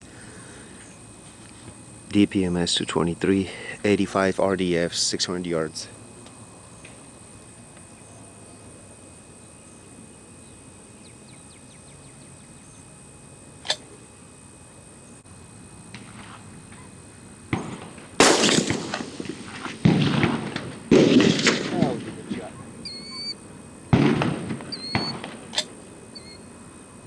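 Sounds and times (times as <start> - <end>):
rifle shot with echo: 17.5 - 22.9, 23.9 - 25.9.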